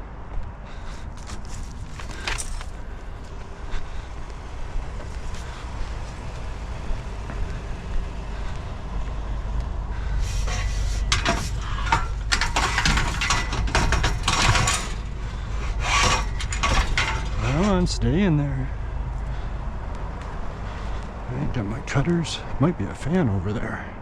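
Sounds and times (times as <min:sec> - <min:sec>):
low steady rumble: 0:00.0 - 0:23.3
scrap metal clanking and scraping: 0:01.2 - 0:03.2, 0:10.0 - 0:18.1.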